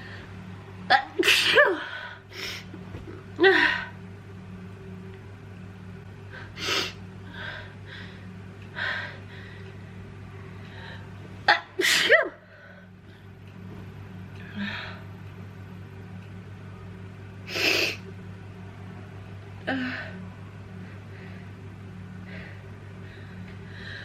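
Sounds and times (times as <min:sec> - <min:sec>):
person breathing: 0:06.3 - 0:09.8, 0:22.2 - 0:24.0.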